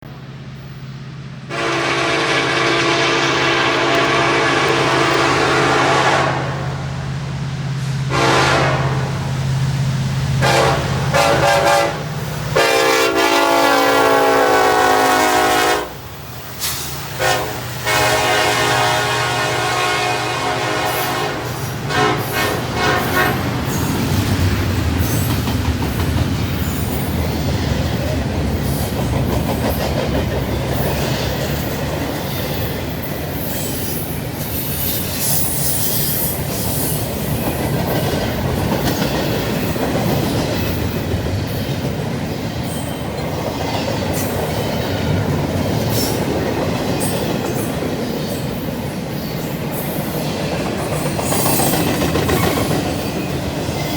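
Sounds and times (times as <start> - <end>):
freight train rumble and wheel clatter: 0.0 - 53.9
locomotive horn: 1.5 - 6.8, 8.1 - 9.3, 10.4 - 16.1, 17.2 - 23.7.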